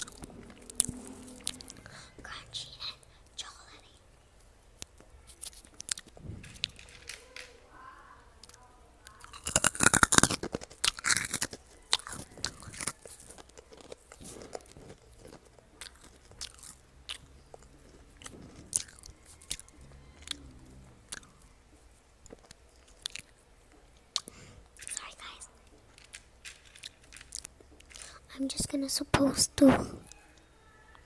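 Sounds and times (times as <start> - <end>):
chewing and crunching cereal: 0.0 - 2.1, 5.3 - 7.1, 8.4 - 28.4.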